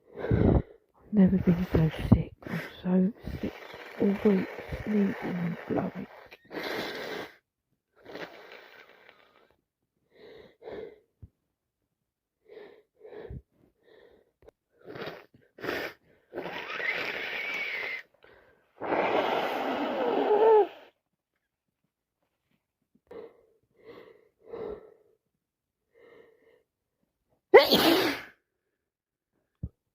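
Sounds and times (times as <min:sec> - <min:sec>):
woman blowing nose: 0:02.4 - 0:07.4, 0:08.0 - 0:09.4, 0:14.8 - 0:18.1, 0:18.8 - 0:21.0, 0:27.6 - 0:28.4
woman sniffing: 0:02.4 - 0:07.4, 0:18.8 - 0:21.0.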